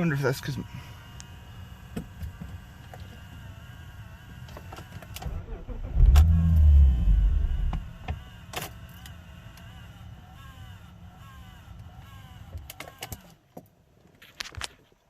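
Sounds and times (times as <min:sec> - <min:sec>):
car engine idling: 0:05.2 - 0:08.3
low engine rumble: 0:05.2 - 0:08.3.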